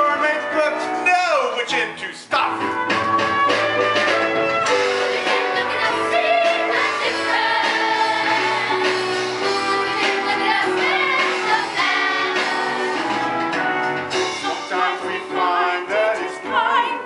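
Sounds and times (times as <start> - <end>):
instrumental accompaniment: 0.0 - 17.0
voices singing: 4.7 - 13.4, 14.3 - 17.0.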